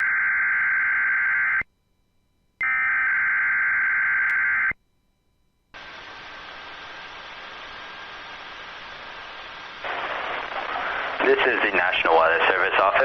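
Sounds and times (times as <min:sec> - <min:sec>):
radio static hiss: 0:05.8 - 0:13.0.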